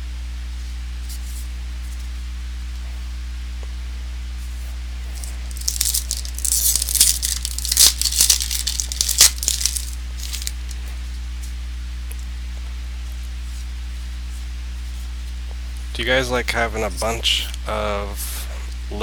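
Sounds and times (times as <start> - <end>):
electrical hum: 0.0 - 19.0
foil wrapper tearing and crinkling: 5.2 - 10.8.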